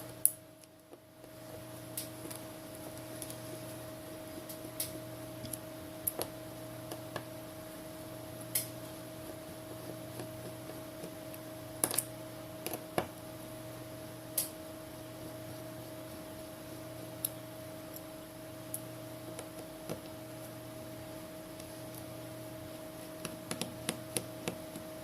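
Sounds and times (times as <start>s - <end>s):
electrical hum: 0.0s - 25.0s.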